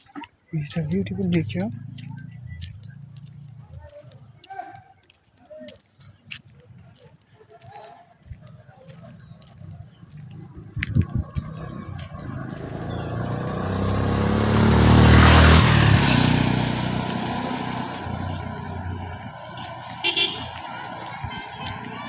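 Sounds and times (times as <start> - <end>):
vehicle driving past: 1.0 - 4.3, 9.4 - 22.0
car horn toot: 19.8 - 22.0.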